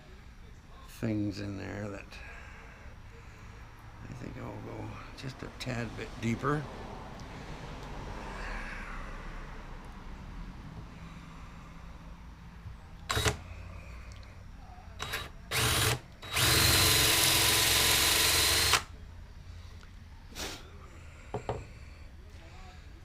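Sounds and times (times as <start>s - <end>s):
electric drill boring into wood: 13.1s - 13.4s, 15.0s - 18.9s.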